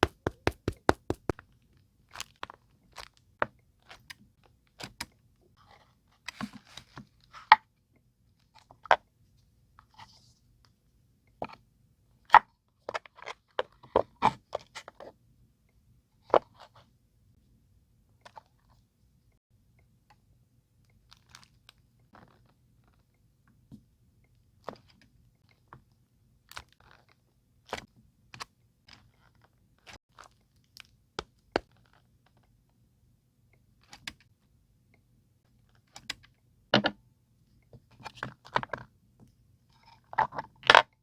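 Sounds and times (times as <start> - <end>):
stamps tapping and clicking: 0.0 - 1.4.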